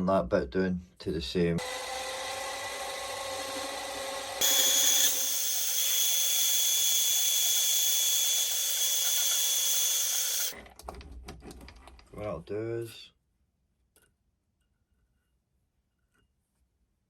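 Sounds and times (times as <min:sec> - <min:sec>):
lathe running: 0:01.6 - 0:10.6.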